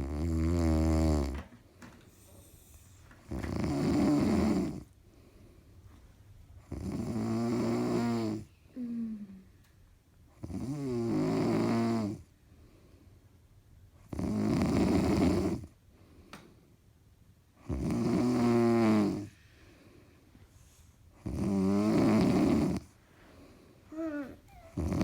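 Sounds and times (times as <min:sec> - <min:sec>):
loud rasping snoring: 0:00.0 - 0:01.4, 0:03.3 - 0:04.8, 0:06.7 - 0:08.4, 0:10.4 - 0:12.2, 0:14.1 - 0:15.7, 0:17.7 - 0:19.3, 0:21.2 - 0:22.9, 0:24.0 - 0:25.0
quiet breathing: 0:01.6 - 0:03.2, 0:04.8 - 0:06.6, 0:08.0 - 0:09.8, 0:12.2 - 0:13.5, 0:15.8 - 0:16.8, 0:19.2 - 0:21.3, 0:22.5 - 0:24.8.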